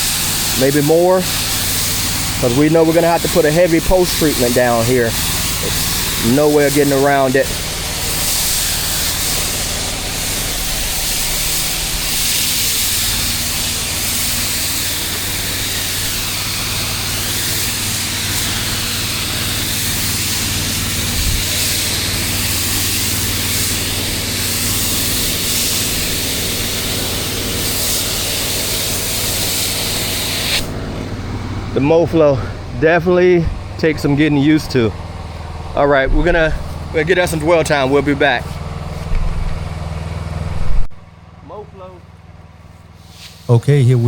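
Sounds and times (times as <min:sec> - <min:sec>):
hiss of water spray: 0:00.0 - 0:30.8, 0:42.9 - 0:44.0
pressure washer engine running: 0:00.0 - 0:44.0.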